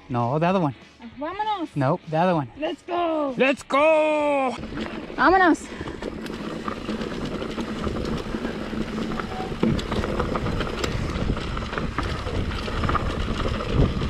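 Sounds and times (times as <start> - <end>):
bike rattling and knocking: 4.5 - 14.0
tyres crunching over stones: 4.6 - 14.0.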